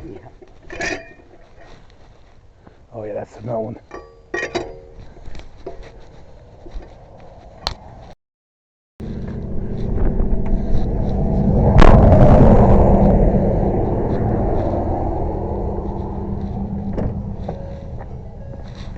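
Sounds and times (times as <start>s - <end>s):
loud vehicle rumble: 9.0s - 18.9s.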